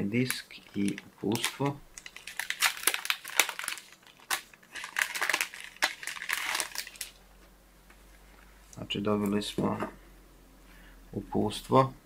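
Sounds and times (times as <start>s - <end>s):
packaging crinkling: 0.2s - 7.2s.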